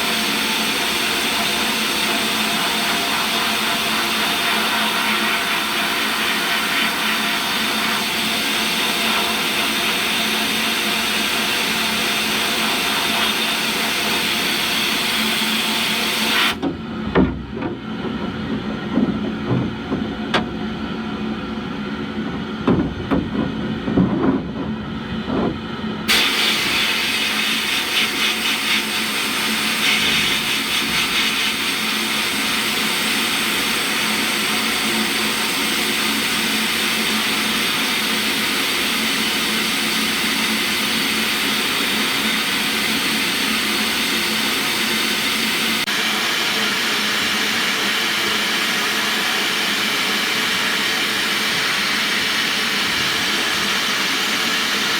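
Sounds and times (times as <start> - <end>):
knocks and clunks: 16.6 - 20.7, 22.3 - 25.7
sandblast nozzle hissing: 26.1 - 36.9.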